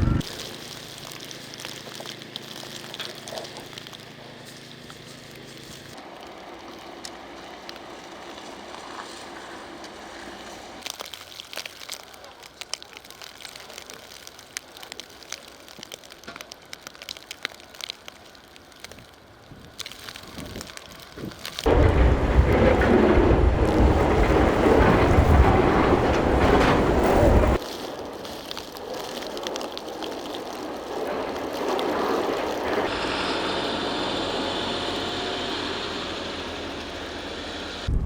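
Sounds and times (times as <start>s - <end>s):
small clicks and crackles: 0.2s - 32.9s
wind buffeting microphone: 19.5s - 27.6s
blizzard wind gusting: 20.4s - 27.6s, 37.8s - 38.0s.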